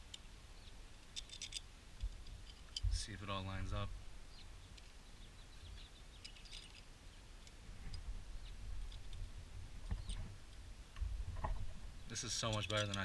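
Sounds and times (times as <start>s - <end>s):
metal parts clicking and tapping: 1.0s - 3.0s, 6.2s - 7.6s, 12.3s - 13.0s.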